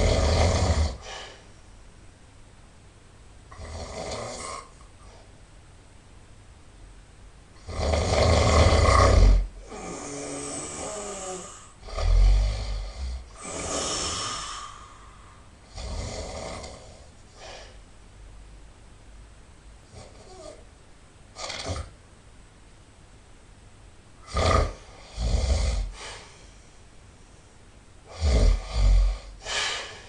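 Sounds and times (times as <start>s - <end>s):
person snoring loudly: 0.0s - 1.4s, 3.5s - 4.7s, 7.6s - 15.1s, 15.7s - 17.1s, 24.2s - 26.2s, 28.1s - 30.0s
hissing breath: 29.4s - 30.0s.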